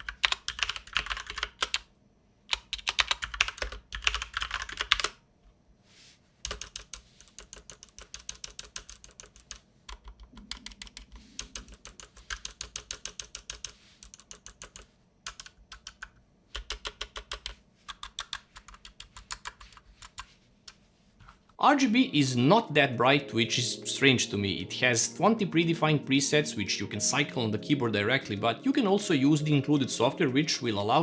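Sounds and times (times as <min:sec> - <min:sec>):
mechanical keyboard typing: 0:00.0 - 0:01.9, 0:02.5 - 0:05.2, 0:06.5 - 0:20.3.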